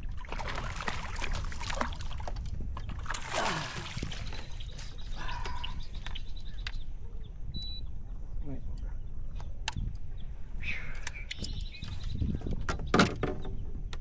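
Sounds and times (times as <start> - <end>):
fish thrashing and splashing water: 0.0 - 5.0
low wind rumble: 0.0 - 14.0.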